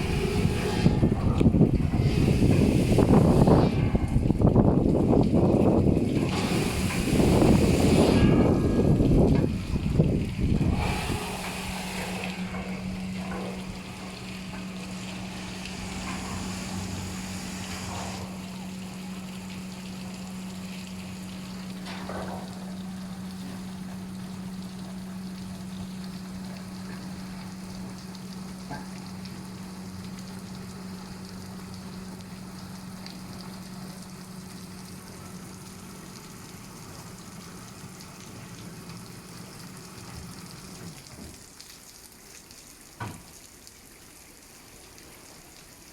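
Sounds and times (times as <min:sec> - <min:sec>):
spraying water hiss: 0:00.0 - 0:43.5
washing machine hum: 0:00.0 - 0:45.9.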